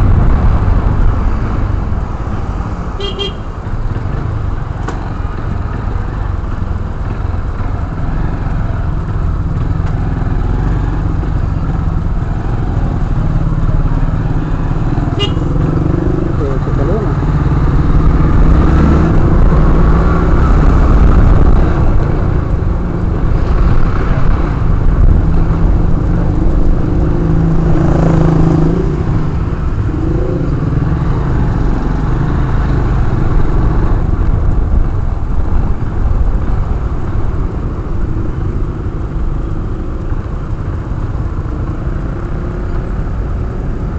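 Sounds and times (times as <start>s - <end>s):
wind and road noise: 0.0s - 43.9s.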